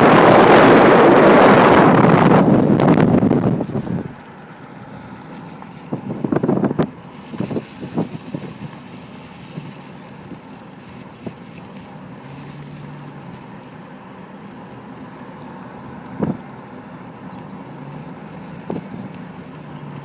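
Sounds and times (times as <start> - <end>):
wind on microphone: 0.0 - 4.2, 5.9 - 8.9
steady outdoor rumble: 0.0 - 20.0.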